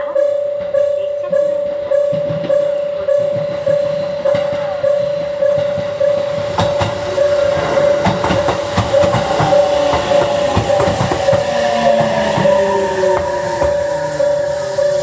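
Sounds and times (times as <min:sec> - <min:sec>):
level crossing alarm ringing: 0:00.0 - 0:15.0
train motors whining: 0:00.0 - 0:15.0
wheels clattering over rail joints: 0:00.0 - 0:15.0.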